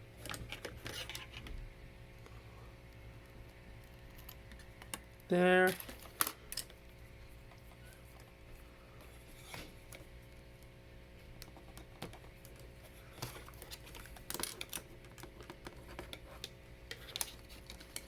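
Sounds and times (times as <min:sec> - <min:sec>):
steady low hum: 0:00.0 - 0:18.0
plastic parts clicking together: 0:11.4 - 0:18.0.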